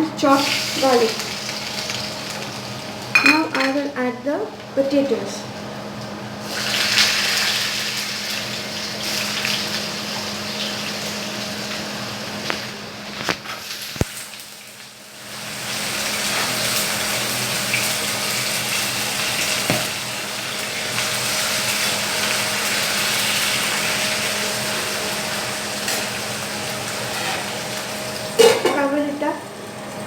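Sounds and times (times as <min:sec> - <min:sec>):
potatoes sizzling in oil: 0:00.0 - 0:04.1, 0:04.8 - 0:30.0.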